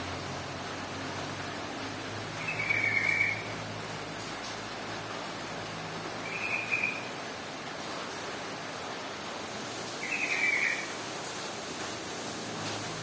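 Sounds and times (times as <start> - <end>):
bird chattering call: 2.4 - 3.5, 6.3 - 7.1, 10.0 - 10.9.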